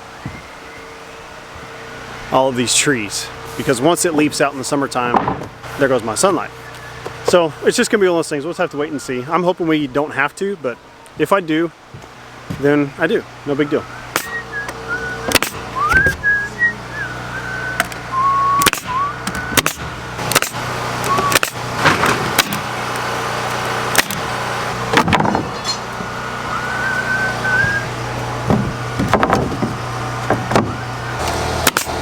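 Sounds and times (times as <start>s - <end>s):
low machine hum: 0.0s - 32.0s
sharp knocks of fastening boards: 5.1s - 5.5s, 14.2s - 14.4s, 15.3s - 16.2s, 18.6s - 22.7s, 23.9s - 24.2s, 24.9s - 25.5s, 28.5s - 30.8s, 31.6s - 32.0s
person whistling: 13.6s - 19.6s, 21.1s - 21.4s, 26.5s - 27.9s.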